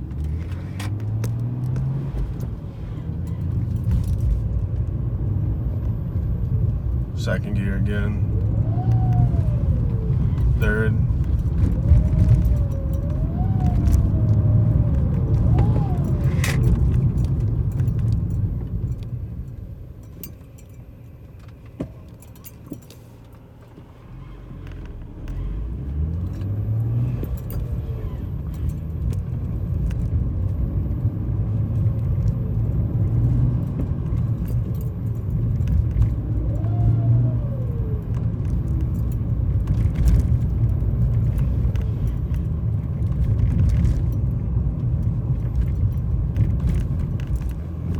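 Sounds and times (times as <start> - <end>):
car engine pulling: 0.0 - 47.9
turbo howling whistle: 8.2 - 10.5, 11.8 - 16.7.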